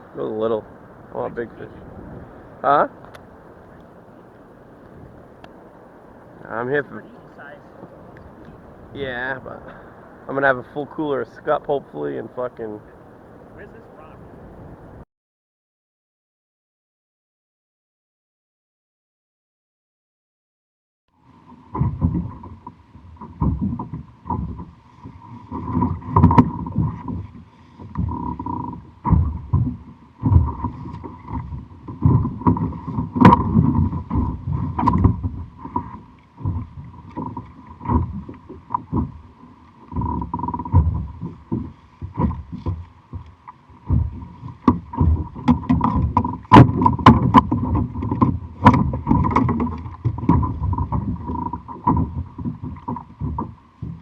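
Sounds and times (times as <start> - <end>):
faint high hum: 0.0 - 15.0
water slapping against kayak: 0.0 - 15.0, 21.4 - 54.0.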